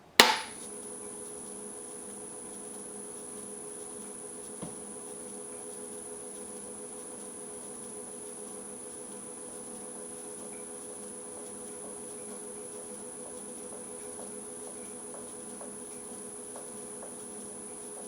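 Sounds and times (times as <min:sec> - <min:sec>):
sharp click: 0:00.2 - 0:00.6.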